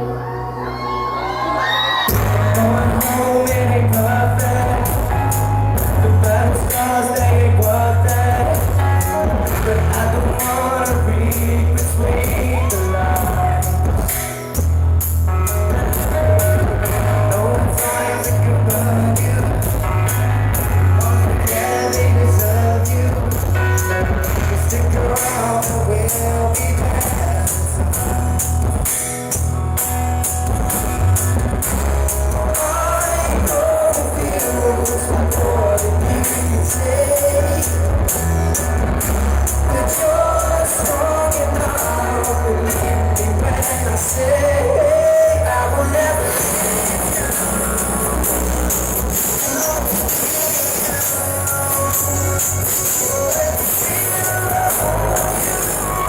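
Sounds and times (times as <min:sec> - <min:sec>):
distorted live pop band: 0:00.0 - 0:56.0
heavy bass: 0:00.0 - 0:56.0.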